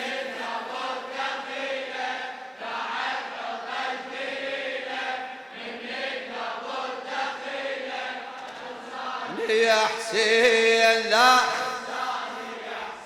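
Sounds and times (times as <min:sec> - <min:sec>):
men chanting in unison: 0:00.0 - 0:13.0
man reciting: 0:09.2 - 0:13.0.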